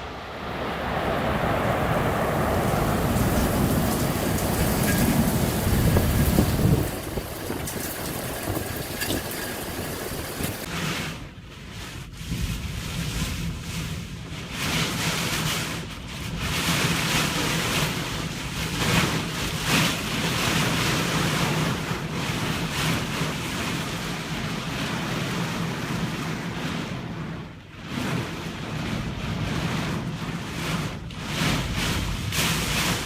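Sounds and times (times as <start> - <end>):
steady low hum: 0.0 - 10.7
wind buffeting microphone: 0.0 - 11.0, 12.0 - 33.0
surf-like noise: 0.0 - 11.3, 27.9 - 33.0
rushing wind: 0.0 - 33.0.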